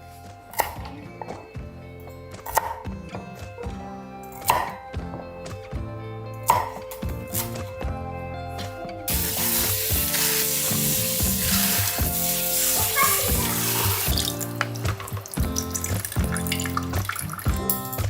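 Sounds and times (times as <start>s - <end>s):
background music: 0.0s - 18.0s
kitchen tap running into sink: 9.1s - 18.0s.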